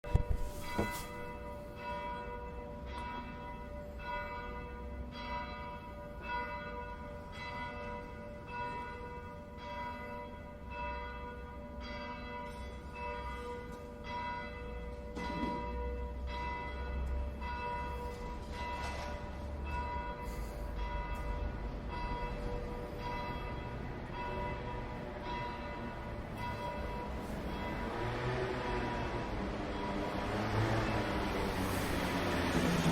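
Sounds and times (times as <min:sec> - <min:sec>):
bell struck and ringing: 0:00.1 - 0:03.4.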